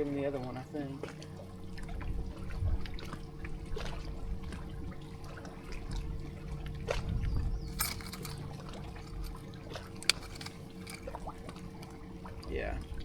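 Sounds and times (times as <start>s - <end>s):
water trickling and splashing: 0.0s - 13.0s.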